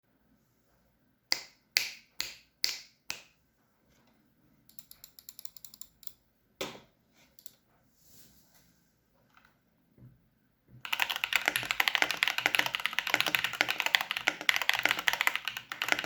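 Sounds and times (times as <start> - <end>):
mechanical keyboard typing: 4.7 - 6.2, 10.8 - 16.0.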